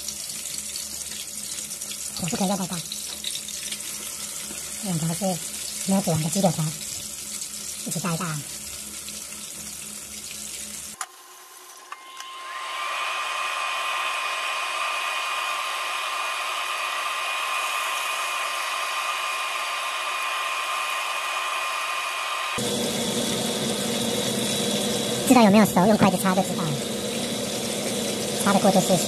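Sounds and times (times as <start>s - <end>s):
chicken sizzling in oil: 0.0s - 11.0s, 22.6s - 29.0s
steady rising whine: 11.9s - 29.0s.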